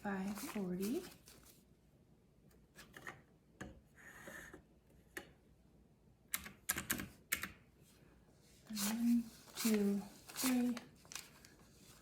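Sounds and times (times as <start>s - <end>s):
banknotes rustling: 0.0s - 1.6s, 8.6s - 12.0s.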